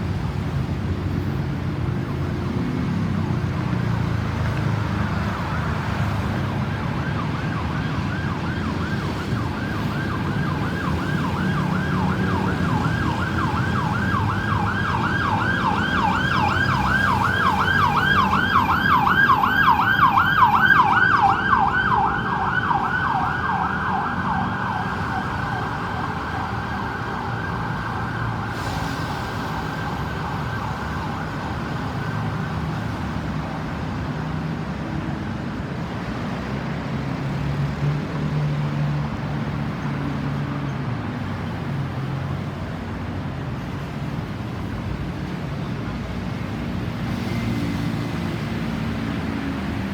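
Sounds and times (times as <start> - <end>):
road traffic: 0.0 - 49.9
ambulance siren wailing: 5.2 - 33.8.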